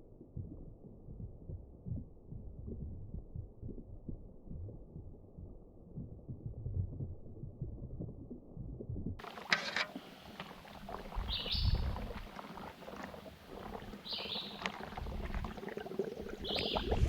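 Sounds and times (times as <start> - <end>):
deep muffled rumbling: 0.0 - 9.2, 11.0 - 12.3
soft low thuds: 0.0 - 9.2.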